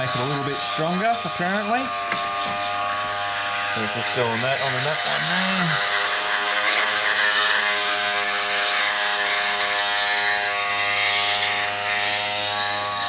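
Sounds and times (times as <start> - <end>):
rotary tool grinding plastic: 0.0 - 13.0.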